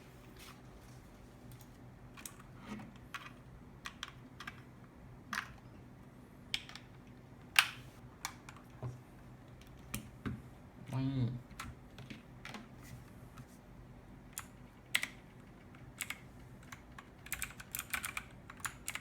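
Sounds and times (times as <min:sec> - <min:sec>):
mechanical keyboard clicks: 0:14.3 - 0:19.0.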